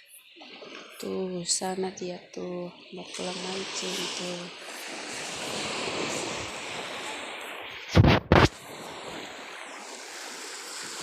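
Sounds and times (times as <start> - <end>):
surf and breeze hiss: 0.0 - 11.0
low thumps on microphone: 7.9 - 8.5.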